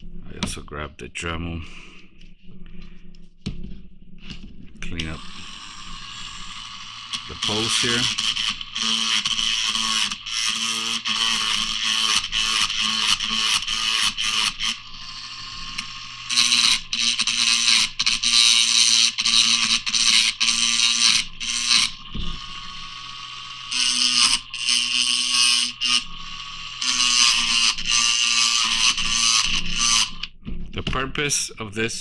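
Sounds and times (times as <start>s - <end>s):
rotary tool grinding metal: 4.9s - 30.4s.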